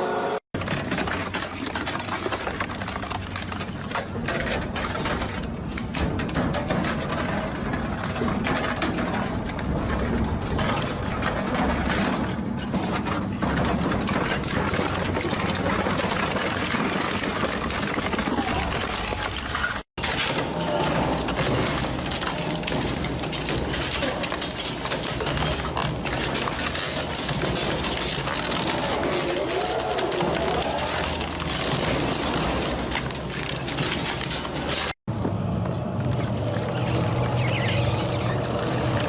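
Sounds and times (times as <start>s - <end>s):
shredder crunching material: 0.0s - 39.0s
low machine drone: 35.1s - 39.0s.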